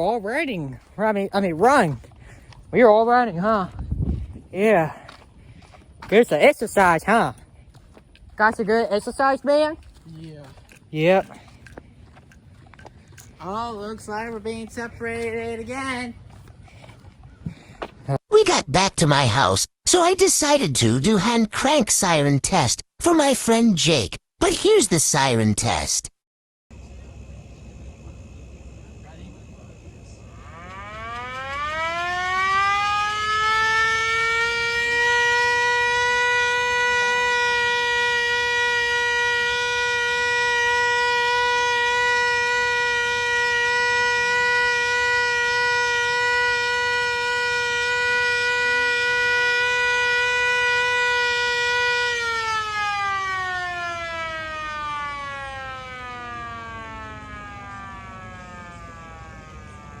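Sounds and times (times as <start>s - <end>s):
hand-crank siren wailing: 13.1s - 17.0s, 27.9s - 60.0s.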